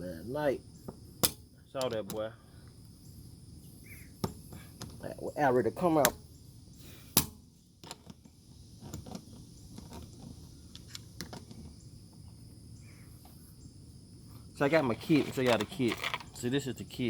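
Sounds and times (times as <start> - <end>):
hand tool clicks and scrapes: 14.8 - 16.4.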